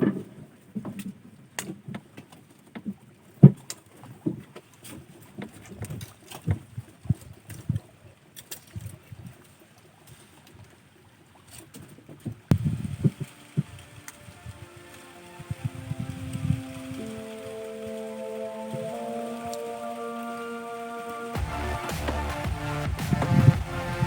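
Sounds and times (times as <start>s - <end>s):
water splashing against boat: 2.0s - 24.0s
low thumps: 21.4s - 24.0s.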